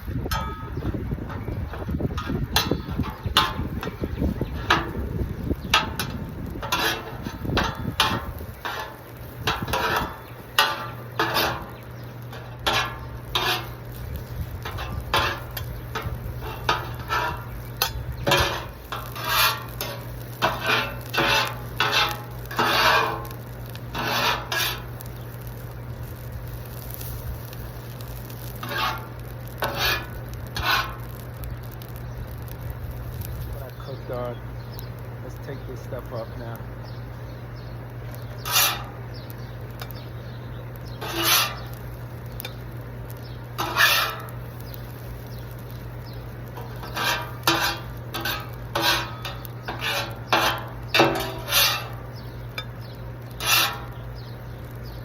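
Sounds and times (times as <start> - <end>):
food sizzling: 0.0 - 55.0
metal spatulas scraping griddle: 0.2 - 25.4, 26.6 - 31.2, 38.2 - 40.0, 40.8 - 42.6, 43.5 - 44.8, 46.5 - 54.1.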